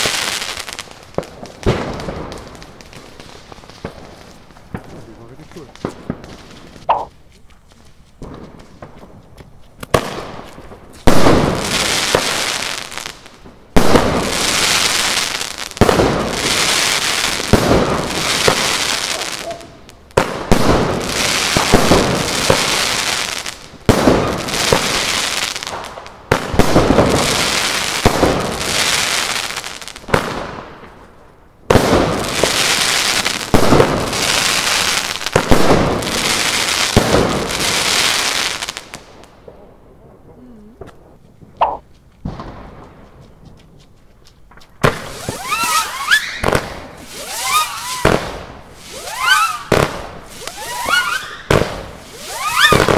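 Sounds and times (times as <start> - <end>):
fireworks bursting and crackling: 0.0 - 52.9
faint fireworks pops: 1.2 - 52.9.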